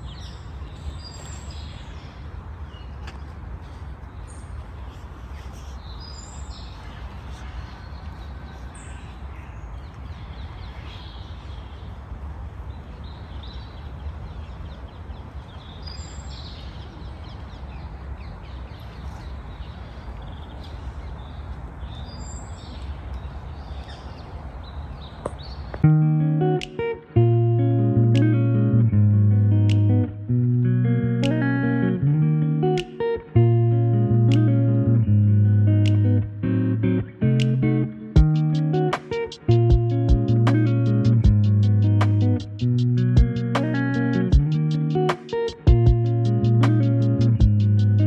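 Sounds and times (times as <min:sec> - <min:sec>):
birds chirping: 0:00.0 - 0:25.8
steady low rumble: 0:39.5 - 0:45.1, 0:45.7 - 0:48.0.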